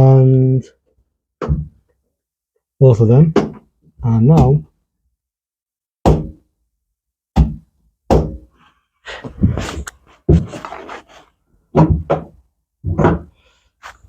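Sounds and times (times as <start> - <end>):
hollow thunks and knocks: 1.4 - 1.9, 3.3 - 3.7, 6.0 - 6.4, 7.3 - 8.5, 10.3 - 10.6, 11.7 - 13.4.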